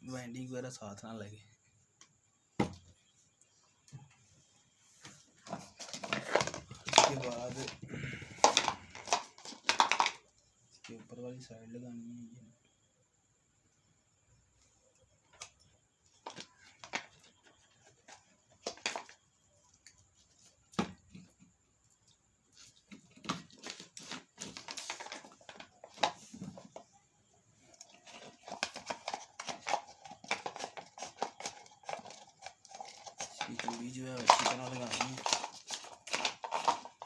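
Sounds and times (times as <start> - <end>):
scraping and rustling: 27.7 - 37.0.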